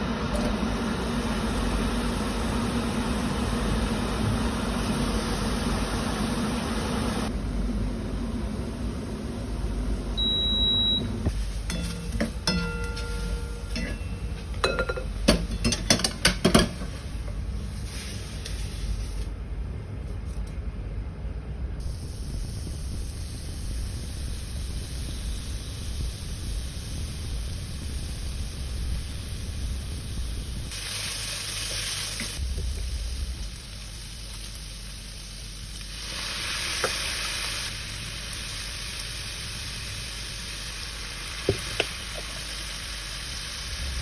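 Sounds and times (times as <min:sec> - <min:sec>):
steady cooking hiss: 0:00.0 - 0:19.4, 0:21.8 - 0:44.0
utensils and dishes clinking: 0:11.6 - 0:16.9.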